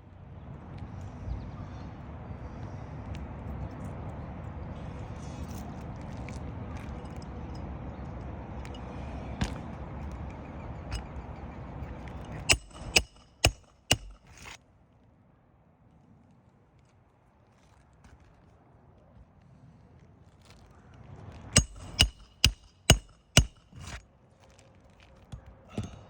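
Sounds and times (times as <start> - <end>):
sharp metallic strikes ringing: 21.6 - 23.6.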